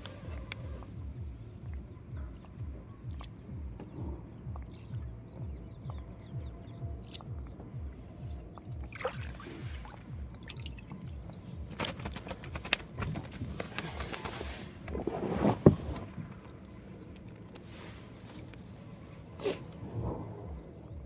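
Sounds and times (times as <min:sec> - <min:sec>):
water splashing and sloshing: 0:00.0 - 0:21.0.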